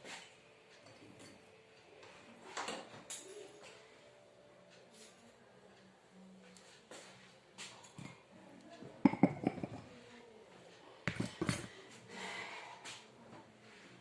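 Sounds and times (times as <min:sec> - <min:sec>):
dishes and utensils clinking: 0:09.0 - 0:10.0, 0:11.1 - 0:11.7.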